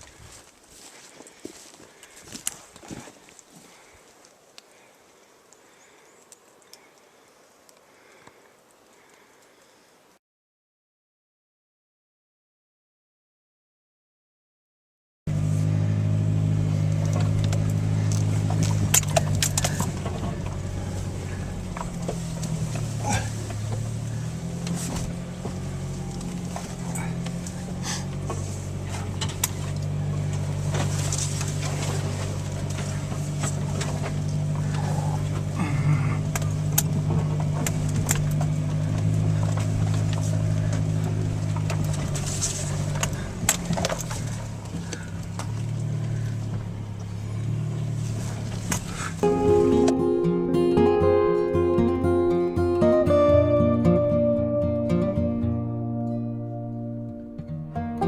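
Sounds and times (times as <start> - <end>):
engine humming: 15.3 - 58.0
clicks and rattles: 17.0 - 22.9.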